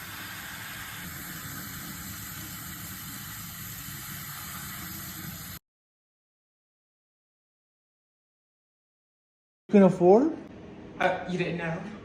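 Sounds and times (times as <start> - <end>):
running water hissing: 0.0 - 5.6.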